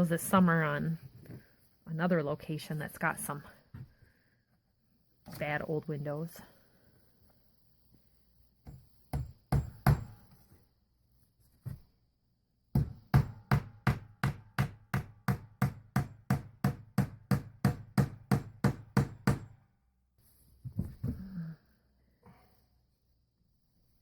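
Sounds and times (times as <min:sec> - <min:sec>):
hammer driving nails: 0:08.6 - 0:10.3, 0:12.7 - 0:19.6.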